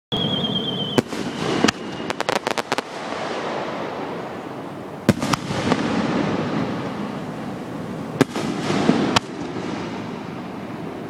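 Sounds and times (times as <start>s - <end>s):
firework whistle: 0.1s - 3.5s
firework bangs: 0.2s - 4.4s, 5.0s - 11.0s
firework crackling pops: 0.9s - 4.4s, 5.0s - 7.3s, 8.1s - 11.0s.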